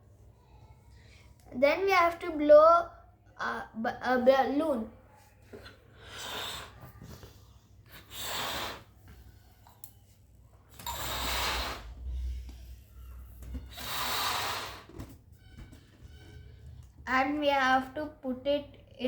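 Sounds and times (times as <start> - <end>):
breaths blowing up balloon: 5.9 - 9.1, 10.7 - 12.6, 13.4 - 15.2.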